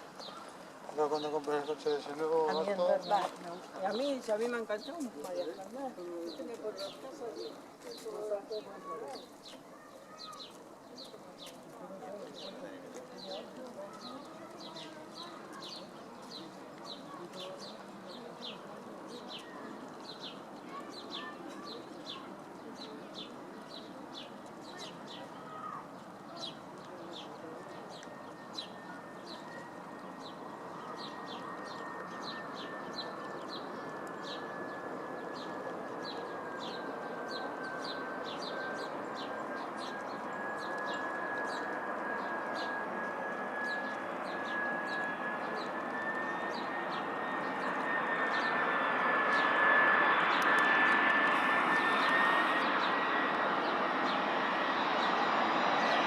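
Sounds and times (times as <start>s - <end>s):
jet airliner rushing and whining: 27.4s - 56.0s.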